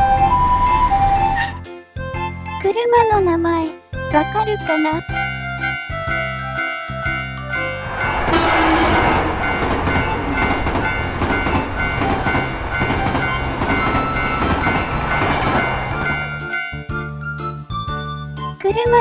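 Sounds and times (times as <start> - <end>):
train rushing rumble: 0.0 - 1.6, 5.1 - 17.4
background music: 0.0 - 19.0.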